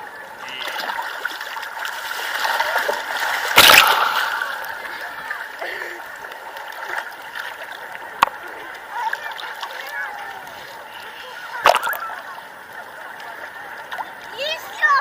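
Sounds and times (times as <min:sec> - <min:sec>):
sea water splashing and sloshing: 0:00.4 - 0:15.0
loud splash: 0:00.6 - 0:05.4, 0:11.6 - 0:12.1.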